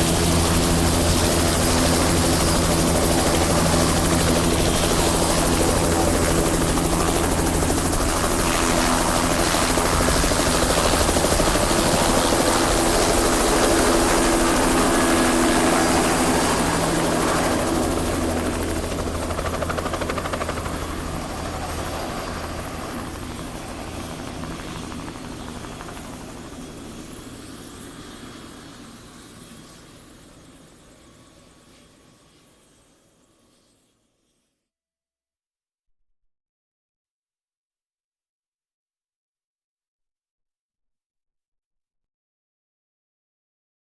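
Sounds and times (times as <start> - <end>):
helicopter rotor and engine: 0.0 - 34.4.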